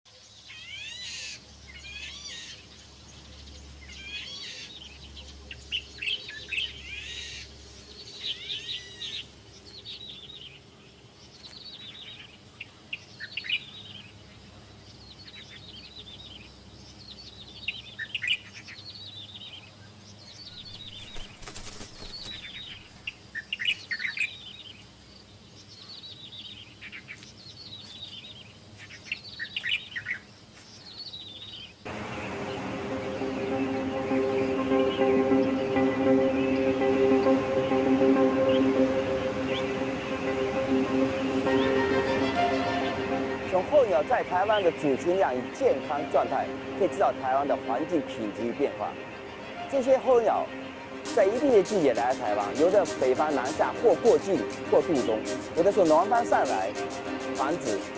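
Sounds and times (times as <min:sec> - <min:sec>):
birds chirping: 0:00.1 - 0:57.9
faint high-pitched tone: 0:31.9 - 0:51.9.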